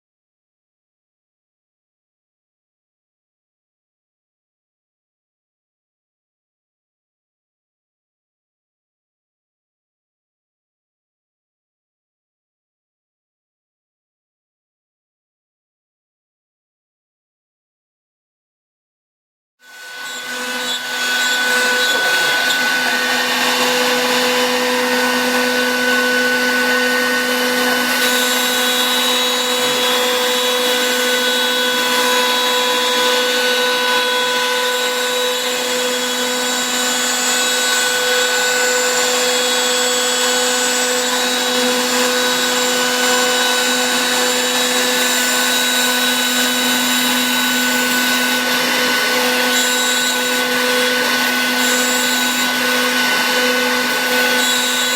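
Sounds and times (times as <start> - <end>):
machine spindle whining: 19.8 - 49.6.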